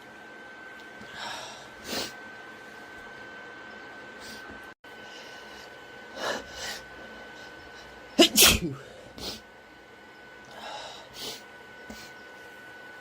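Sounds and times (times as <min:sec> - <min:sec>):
man sneezing: 0:08.2 - 0:09.4.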